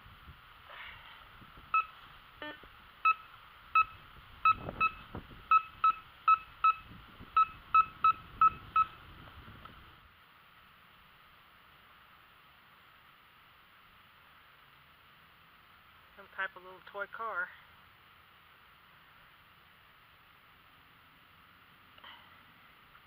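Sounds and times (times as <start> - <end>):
metal detector beeps: 1.7 - 2.0, 3.0 - 9.0.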